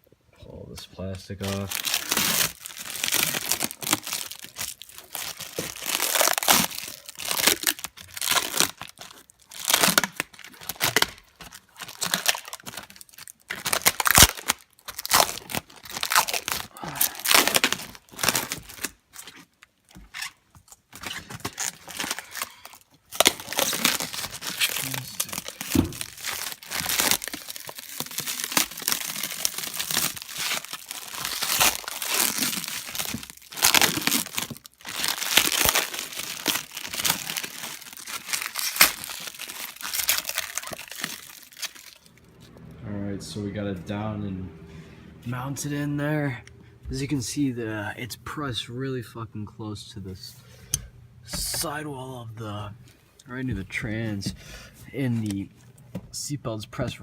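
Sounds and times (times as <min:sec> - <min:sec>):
plastic sheeting crinkling: 0:01.3 - 0:42.6.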